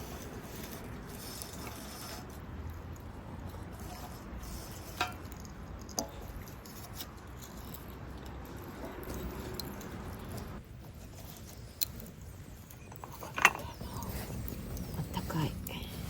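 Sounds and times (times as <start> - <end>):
campfire hissing and crackling: 8.4 - 16.0.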